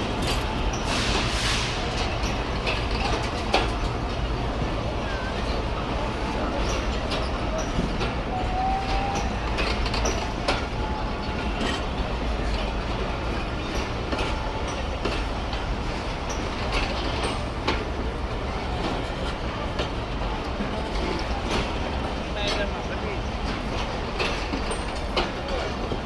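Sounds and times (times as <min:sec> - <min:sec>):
train rumble: 0:00.0 - 0:26.0
train wheels clicking over rail joints: 0:00.0 - 0:26.0.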